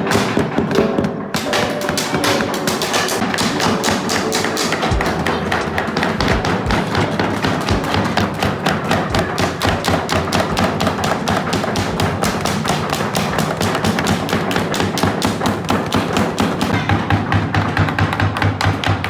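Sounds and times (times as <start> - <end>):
background music: 0.0 - 11.4
hammers tapping: 0.0 - 19.0.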